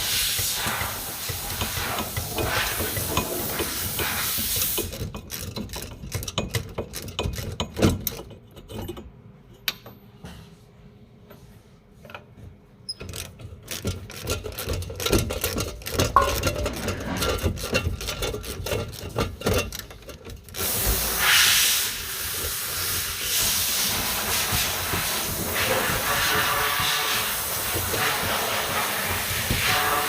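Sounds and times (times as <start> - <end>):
loud steady hiss: 0.0 - 4.9, 20.6 - 30.0
metal tools clicking and scraping: 4.6 - 10.0, 12.9 - 20.6.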